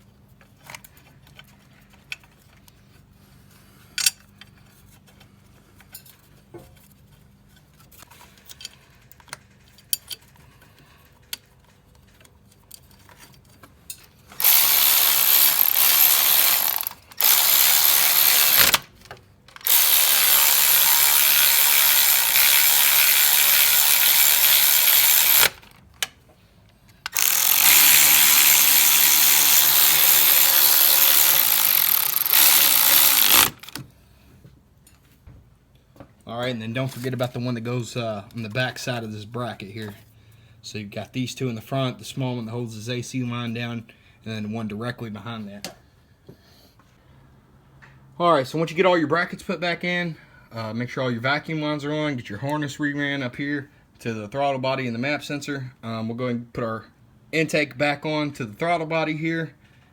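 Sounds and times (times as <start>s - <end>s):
clicks of parts being handled: 3.9s - 6.8s, 7.6s - 14.1s
cordless power ratchet whirring: 14.3s - 25.8s, 27.1s - 33.9s.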